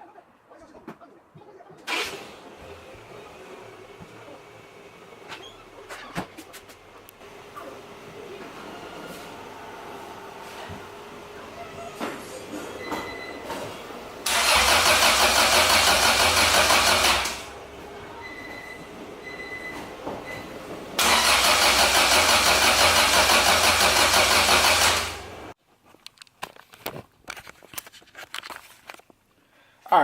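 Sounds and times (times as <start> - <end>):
starter cranking engine: 1.9 - 2.3, 14.2 - 17.5, 21.0 - 25.3.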